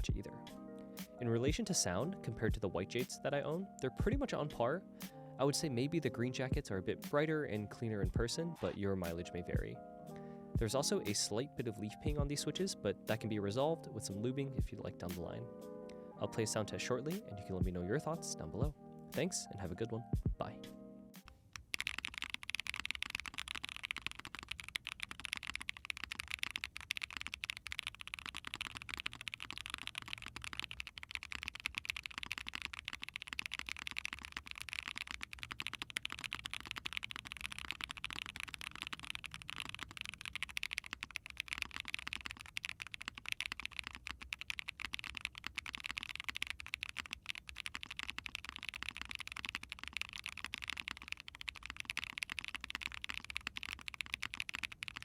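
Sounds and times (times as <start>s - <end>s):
fast typing on mechanical keyboard: 21.6s - 55.0s.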